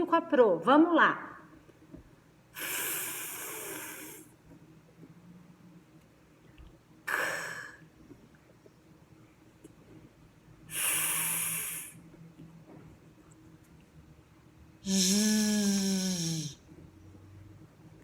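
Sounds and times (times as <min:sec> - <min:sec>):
woman making hissed consonant sounds: 0:14.8 - 0:16.6.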